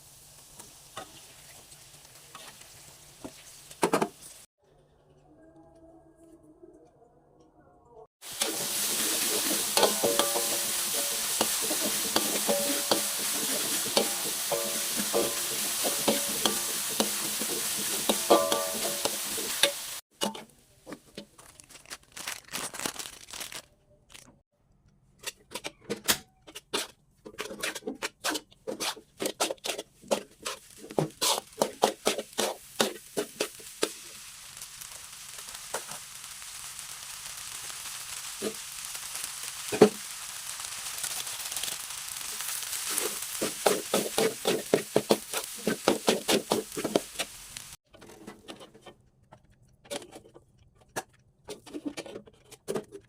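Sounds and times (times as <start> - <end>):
food sizzling in a pan: 0.0 - 4.5, 8.2 - 20.0, 28.8 - 47.8.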